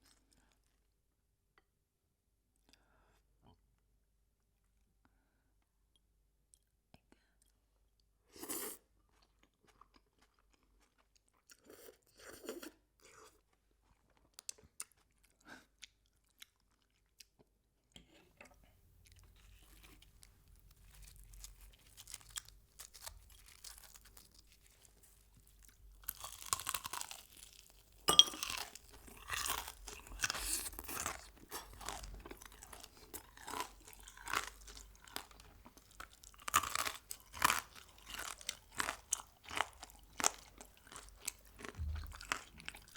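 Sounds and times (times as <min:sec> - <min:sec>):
crunchy chewing of fried chicken: 0:08.3 - 0:18.2, 0:19.0 - 0:42.9.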